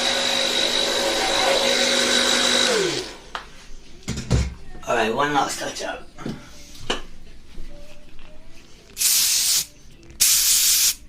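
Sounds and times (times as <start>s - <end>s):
hair spray bursts: 9.0s - 11.0s.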